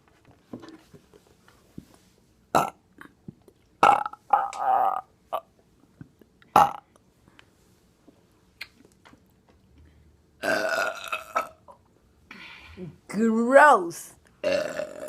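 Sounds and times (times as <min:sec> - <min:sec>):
person burping: 0:02.6 - 0:03.2, 0:03.8 - 0:05.5, 0:06.5 - 0:06.8, 0:10.4 - 0:11.8, 0:14.4 - 0:15.0.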